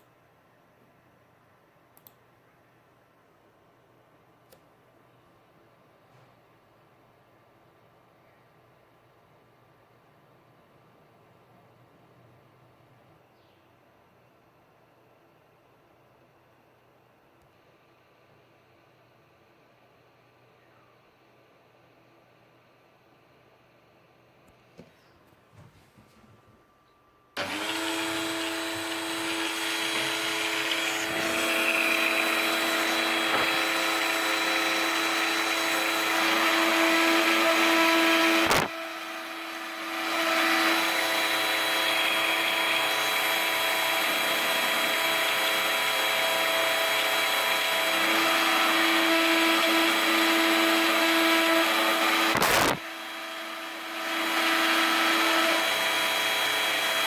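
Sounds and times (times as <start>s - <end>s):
drill spindle whining: 27.4s - 57.0s.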